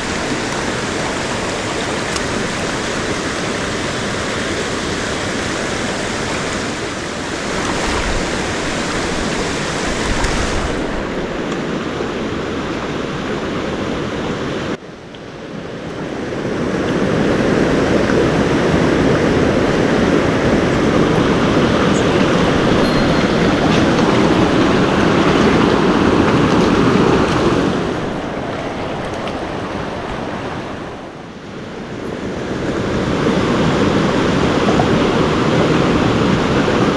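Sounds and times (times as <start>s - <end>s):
water rushing over rocks: 0.0s - 14.8s, 15.7s - 36.9s.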